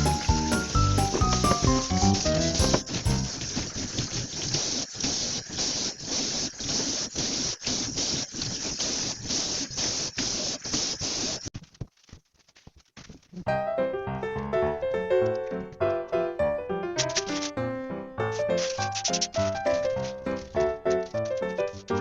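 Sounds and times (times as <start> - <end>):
tap water running and splashing: 0.0 - 11.4.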